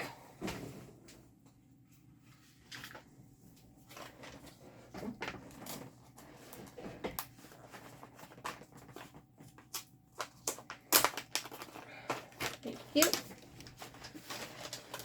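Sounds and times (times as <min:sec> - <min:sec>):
packaging rustling: 0:03.8 - 0:15.0.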